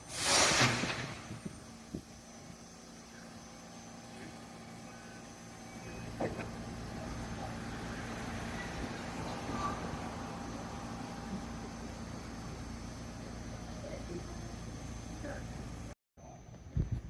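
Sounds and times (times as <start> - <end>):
electric train hum: 0.0 - 16.0
train rumble: 6.0 - 15.9.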